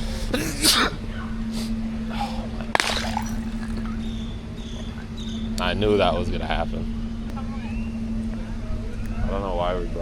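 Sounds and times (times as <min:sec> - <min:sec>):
glass clink: 0:02.8 - 0:04.0
glass shattering: 0:02.8 - 0:04.0.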